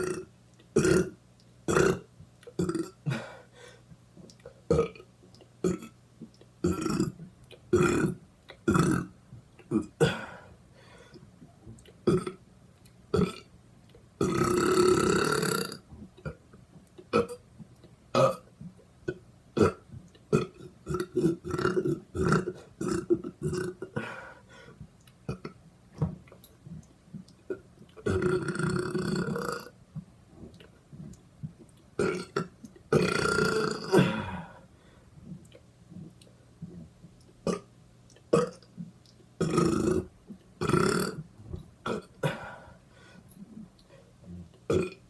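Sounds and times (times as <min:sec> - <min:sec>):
person belching: 0:00.0 - 0:03.3, 0:04.7 - 0:05.0, 0:06.6 - 0:09.1, 0:12.1 - 0:12.4, 0:13.2 - 0:13.5, 0:14.2 - 0:16.4, 0:17.1 - 0:17.4, 0:18.2 - 0:18.5, 0:19.1 - 0:24.1, 0:28.0 - 0:29.7, 0:32.0 - 0:34.6, 0:37.5 - 0:37.7, 0:38.3 - 0:38.6, 0:39.4 - 0:41.2, 0:41.8 - 0:42.6, 0:44.7 - 0:45.0.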